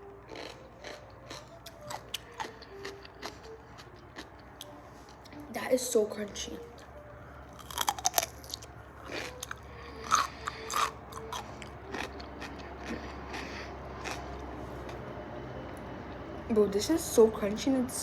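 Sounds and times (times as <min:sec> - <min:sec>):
pickle crunching while chewed: 0:00.0 - 0:05.5, 0:06.8 - 0:15.0.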